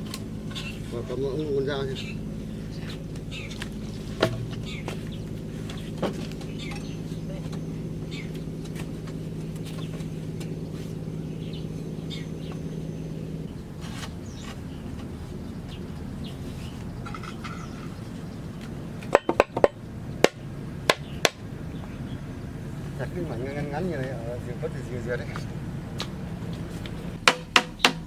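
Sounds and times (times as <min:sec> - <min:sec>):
low hum: 0:00.0 - 0:28.0
machete chopping bamboo: 0:19.1 - 0:21.4, 0:27.2 - 0:28.0.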